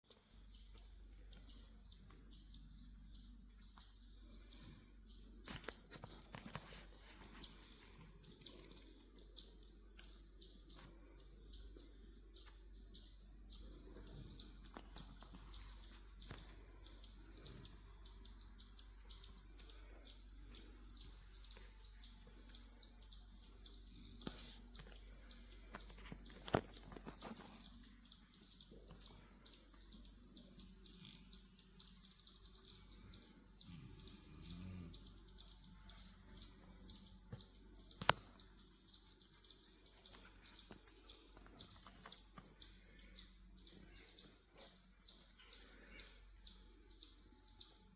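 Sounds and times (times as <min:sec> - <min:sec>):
high-pitched insect chorus: 0:00.1 - 0:47.9
small clicks and ticks: 0:37.3 - 0:38.6.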